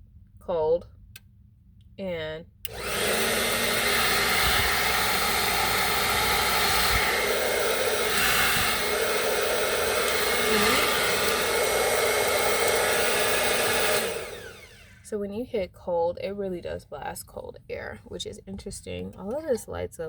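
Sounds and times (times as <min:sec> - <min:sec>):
hair dryer blowing air: 0:02.7 - 0:15.0.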